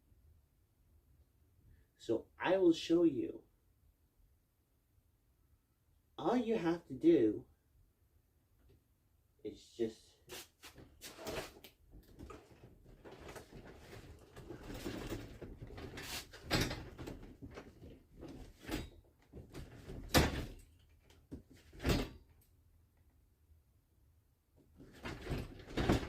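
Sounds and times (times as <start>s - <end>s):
garage door rattling and scraping: 11.0s - 20.7s, 24.8s - 26.0s.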